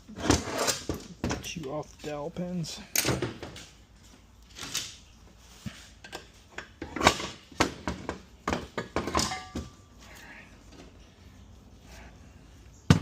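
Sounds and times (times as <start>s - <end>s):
metal parts knocking and clanking: 6.0s - 9.8s
metallic ring: 9.2s - 9.8s.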